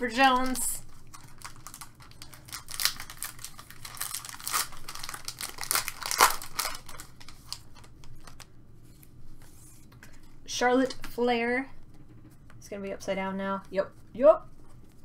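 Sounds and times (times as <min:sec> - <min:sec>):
wrapper being torn and crinkled: 0:00.4 - 0:08.5.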